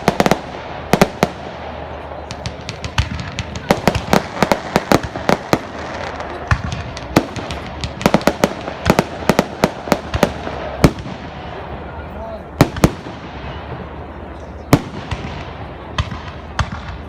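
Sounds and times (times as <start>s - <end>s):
fireworks bangs and cracks: 0.0s - 17.0s.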